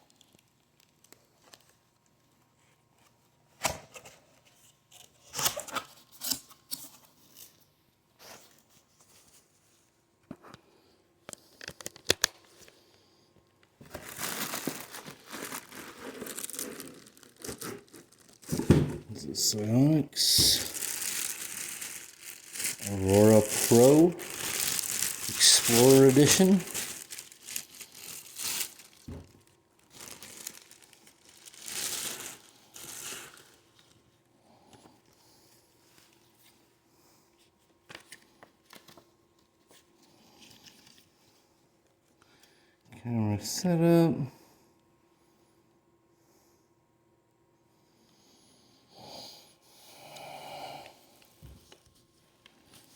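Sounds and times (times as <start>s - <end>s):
wrapping crinkling: 13.8s - 34.0s.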